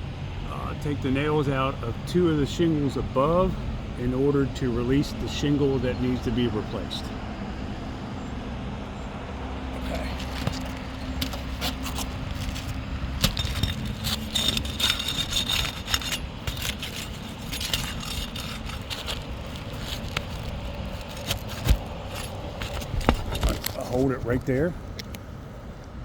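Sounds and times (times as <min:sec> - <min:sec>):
steady low hum: 0:00.0 - 0:26.0
tool scraping and clicking shingles: 0:09.8 - 0:25.2.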